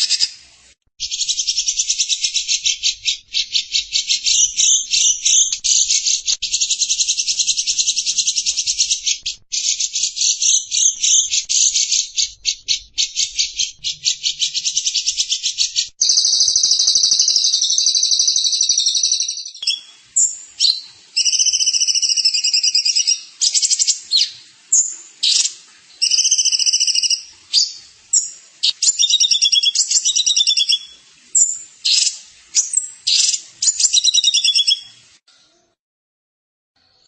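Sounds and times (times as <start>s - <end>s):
songbird trilling: 1.0s - 34.9s.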